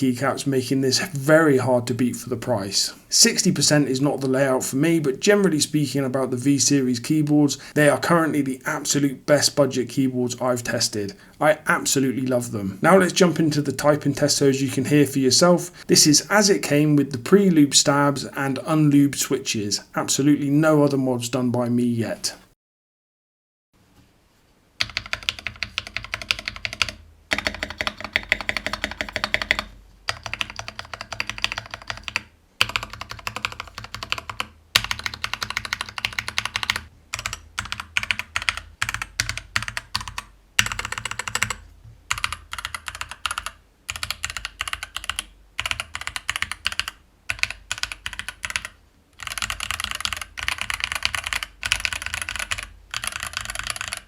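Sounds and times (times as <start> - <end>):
mechanical keyboard typing: 24.8 - 54.0.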